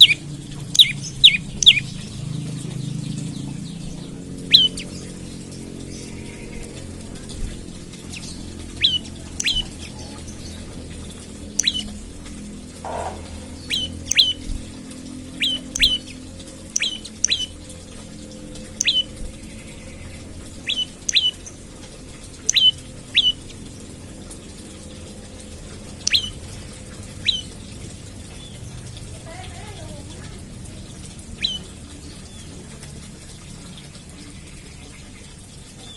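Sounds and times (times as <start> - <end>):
bird chips: 0.0 - 2.1, 4.4 - 5.0, 7.8 - 10.5, 11.5 - 12.0, 12.8 - 14.7, 15.4 - 17.6, 18.8 - 19.2, 20.6 - 21.6, 22.4 - 23.5, 26.0 - 26.5
low steady hum: 0.0 - 35.9.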